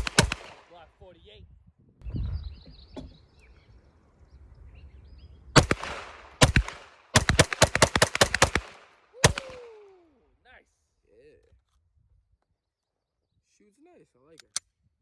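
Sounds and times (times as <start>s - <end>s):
pistol shots: 0.0s - 0.8s, 5.6s - 9.7s.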